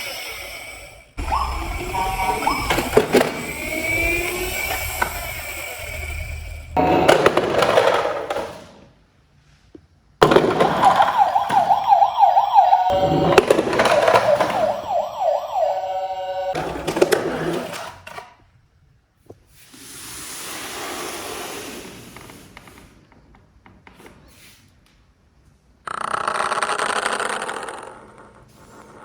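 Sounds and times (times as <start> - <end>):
electronic police siren wail: 1.2 - 7.4, 10.2 - 17.1.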